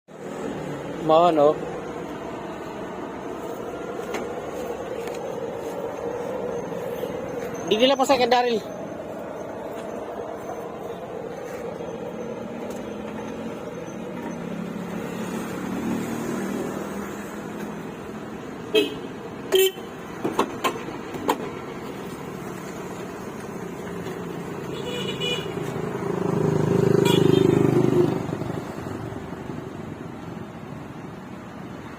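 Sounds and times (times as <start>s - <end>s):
road traffic: 0.0s - 31.9s
loud vehicle passing: 0.1s - 31.9s
horn toots: 24.7s - 25.6s, 26.9s - 27.7s.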